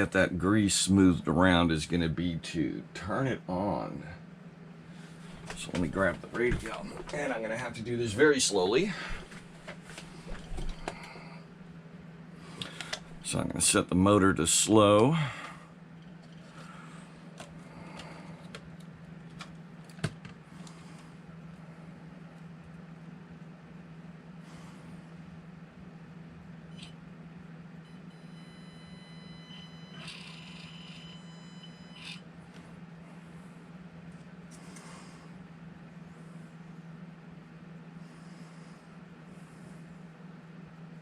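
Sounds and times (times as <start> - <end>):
high motor whine: 27.7 - 33.0
small electric motor humming: 28.2 - 32.3.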